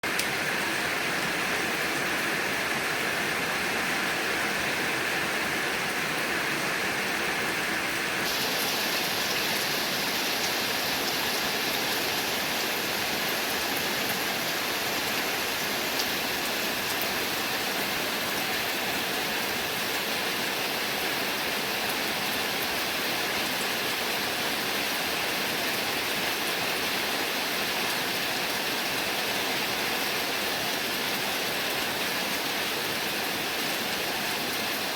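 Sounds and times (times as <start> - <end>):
heavy rain: 0.0 - 34.9.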